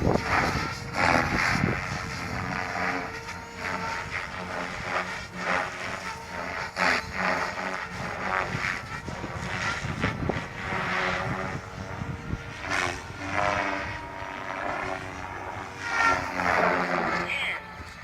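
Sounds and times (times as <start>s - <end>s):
rc helicopter rotor whine: 0.0s - 18.0s.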